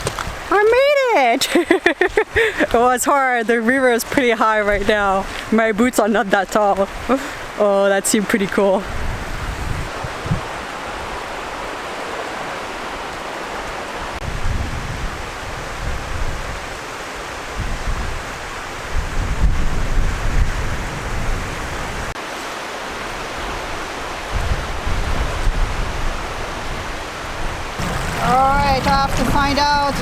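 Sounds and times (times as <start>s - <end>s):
wind gusting on microphone: 0.0s - 1.1s, 8.2s - 22.2s, 22.8s - 30.0s
water rushing: 9.9s - 14.2s, 26.3s - 30.0s.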